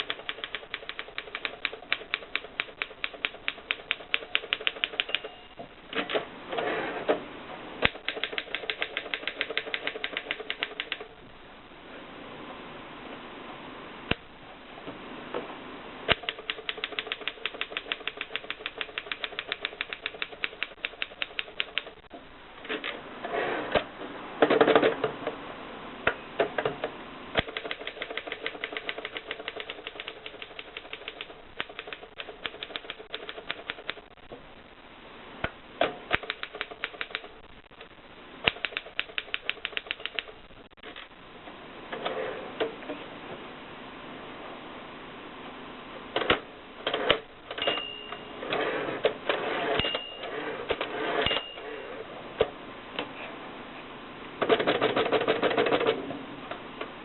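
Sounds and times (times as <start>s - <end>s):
typewriter keys clacking: 0.0s - 5.4s, 7.8s - 11.1s, 16.1s - 22.1s, 27.4s - 34.1s, 38.5s - 40.4s.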